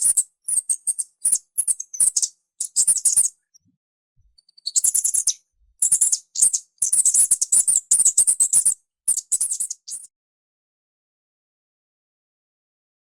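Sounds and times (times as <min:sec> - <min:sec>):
mouse squeaking: 0:00.0 - 0:03.6, 0:04.4 - 0:10.1.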